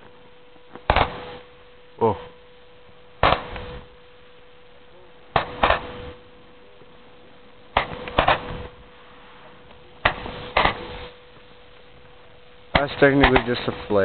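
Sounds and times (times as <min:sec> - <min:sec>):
fireworks bangs: 0:00.8 - 0:02.4, 0:03.2 - 0:04.1, 0:05.3 - 0:07.0, 0:07.7 - 0:14.0.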